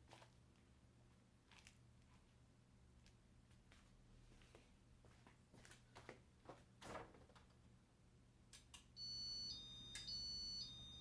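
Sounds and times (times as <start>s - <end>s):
electronic beeping tones: 9.0s - 11.0s.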